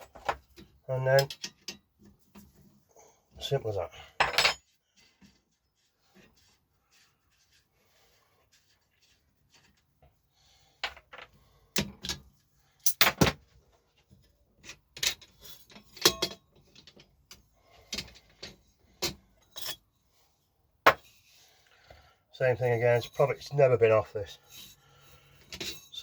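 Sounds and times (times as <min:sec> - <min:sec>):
metal parts and tools clinking: 0:00.0 - 0:02.5, 0:04.2 - 0:04.8, 0:10.8 - 0:13.4, 0:14.2 - 0:19.9, 0:24.5 - 0:26.0.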